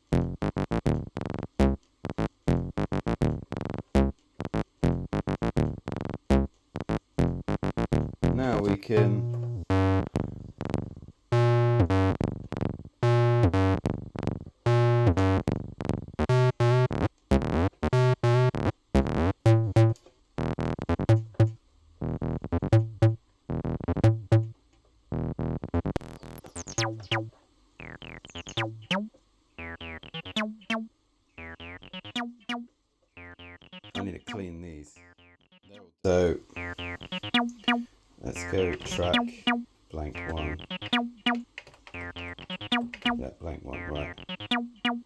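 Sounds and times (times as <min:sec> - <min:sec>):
synthesizer playing short notes: 0:26.0 - 0:34.4, 0:36.6 - 0:45.0.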